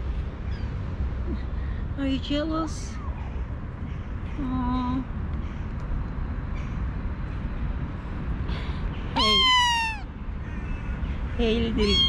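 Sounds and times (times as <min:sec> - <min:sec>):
kitten meowing: 0:09.2 - 0:10.1, 0:11.8 - 0:12.0.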